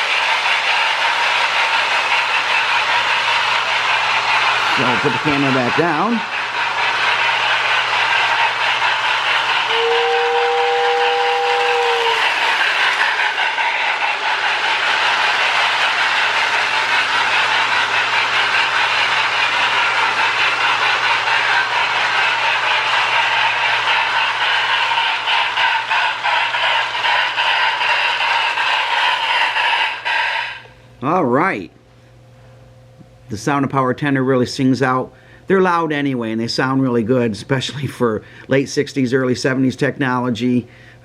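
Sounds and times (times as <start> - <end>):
steady steam hiss: 0.0 - 30.7
toy train running on track: 0.0 - 30.7
two-note train whistle: 9.7 - 12.2.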